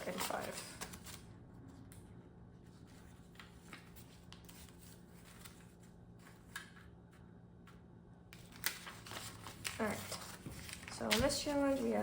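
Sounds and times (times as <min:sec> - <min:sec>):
banknotes rustling: 0:00.0 - 0:01.2, 0:02.8 - 0:06.8, 0:08.4 - 0:12.0
low room hum: 0:00.0 - 0:12.0.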